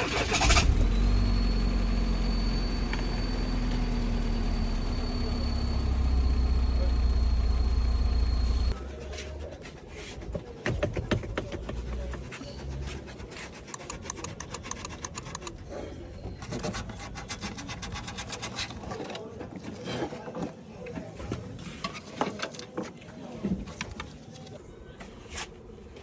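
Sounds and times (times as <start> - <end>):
car engine humming: 0.1 - 8.8
quick clicks and ticks: 13.7 - 15.6.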